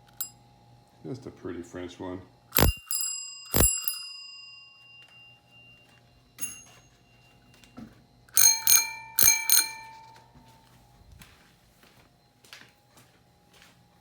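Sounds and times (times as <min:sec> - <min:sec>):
bicycle bell ringing: 0:02.6 - 0:05.5, 0:06.4 - 0:06.9, 0:08.4 - 0:10.5.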